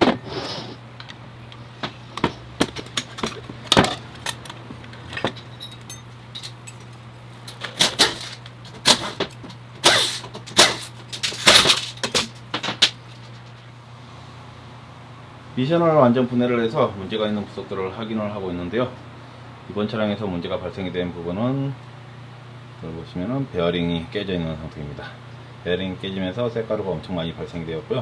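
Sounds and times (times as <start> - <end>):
steady low hum: 0.0 - 28.0
metal parts and tools clinking: 2.2 - 13.6.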